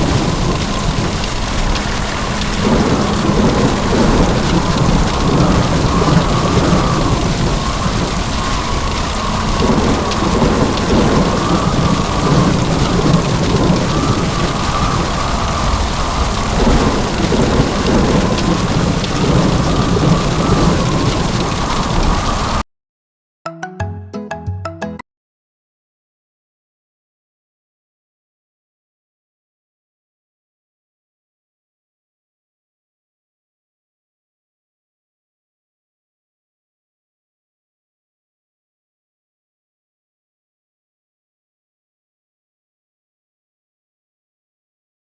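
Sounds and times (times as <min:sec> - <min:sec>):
heavy rain pouring: 0:00.0 - 0:22.6
rolling thunder: 0:00.0 - 0:22.6
music: 0:23.5 - 0:25.0.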